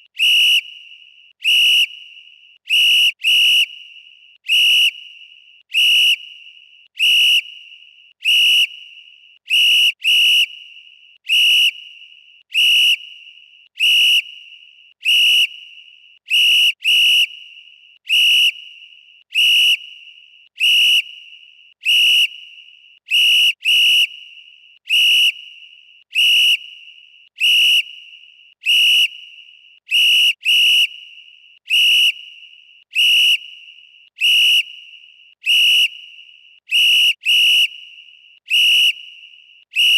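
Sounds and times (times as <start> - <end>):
referee whistle blasts: 0.2 - 0.9, 1.5 - 5.2, 31.7 - 39.9.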